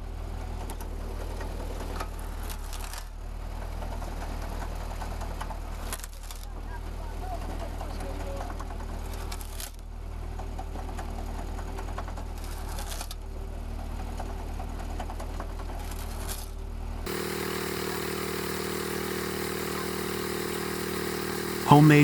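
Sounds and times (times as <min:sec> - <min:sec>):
engine-driven machine humming: 0:17.1 - 0:22.0
machine whining and hissing: 0:17.1 - 0:22.0.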